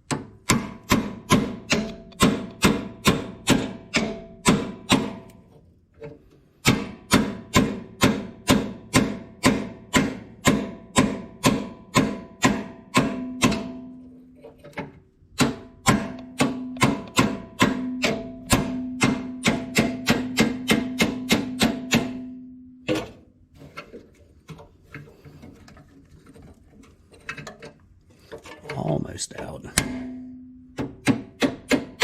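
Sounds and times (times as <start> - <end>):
hammer striking metal punch: 0.1 - 5.3, 6.6 - 14.0, 15.4 - 23.1, 29.8 - 32.0.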